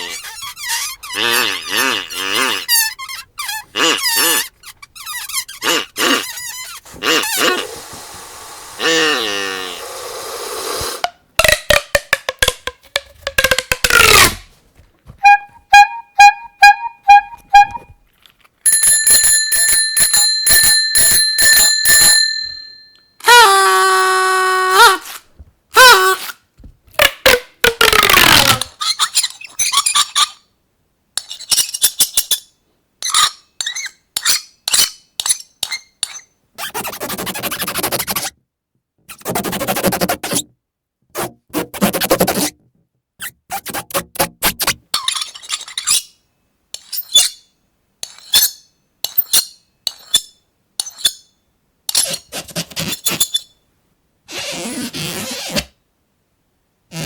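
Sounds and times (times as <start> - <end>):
noisy hiss: 6.9 - 11.3
sliding tones: 15.1 - 18.0
held pitched tone: 15.2 - 17.9
short beeps: 15.3 - 17.9.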